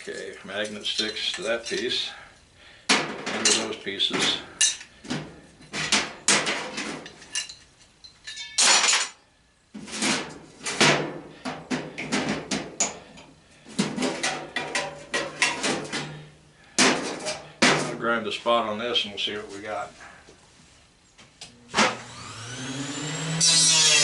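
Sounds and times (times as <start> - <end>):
metal parts clattering: 5.7 - 9.2.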